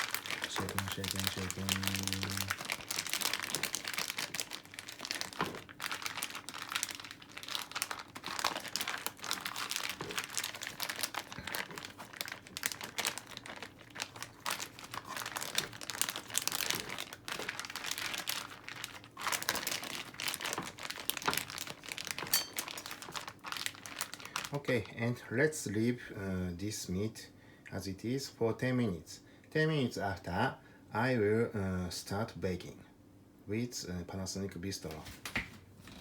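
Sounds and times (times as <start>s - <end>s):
plastic bag crinkling: 0.0s - 24.8s.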